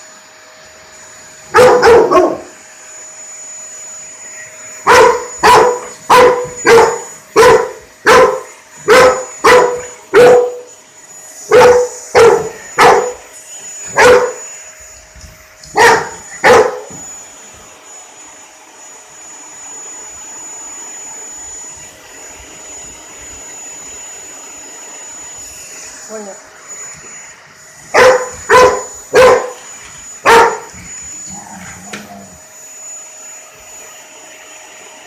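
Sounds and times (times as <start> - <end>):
vacuum cleaner hum and whine: 0.0 - 35.0
dog barking: 1.5 - 2.5, 4.9 - 10.7, 11.5 - 13.2, 13.9 - 14.4, 15.7 - 17.0, 27.9 - 29.6, 30.2 - 30.8.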